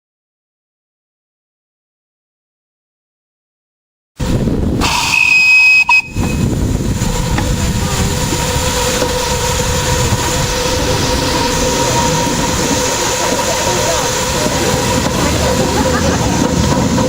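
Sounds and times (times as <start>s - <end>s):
miniature train rumbling: 4.2s - 17.0s
high whistle-like tone: 4.8s - 6.6s.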